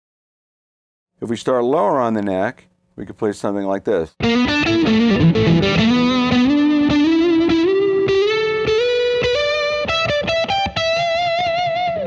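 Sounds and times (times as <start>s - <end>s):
distorted electric guitar lick: 4.2s - 12.0s.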